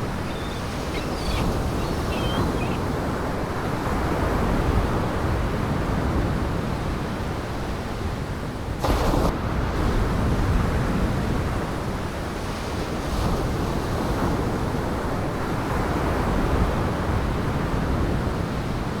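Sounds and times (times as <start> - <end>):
wind buffeting microphone: 0.0 - 3.0.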